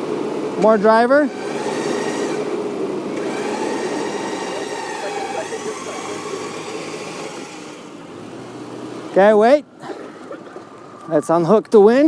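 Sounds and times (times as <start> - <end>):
electric winch motor whining: 0.0 - 9.1
vehicle engine running: 0.0 - 9.2.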